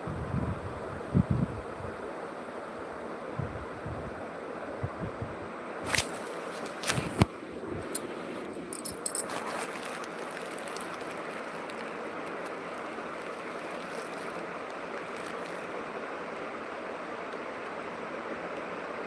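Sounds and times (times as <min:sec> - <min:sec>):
running water rushing: 0:09.0 - 0:16.0.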